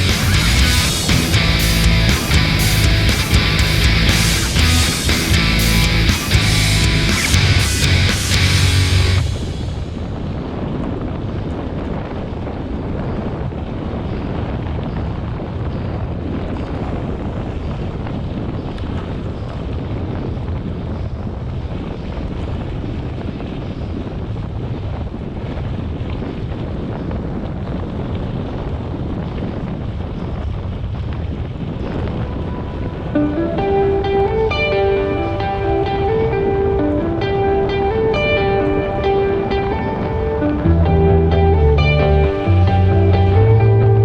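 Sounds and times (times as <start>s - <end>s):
rolling road noise: 0.0s - 10.5s
wind buffeting microphone: 0.0s - 44.0s.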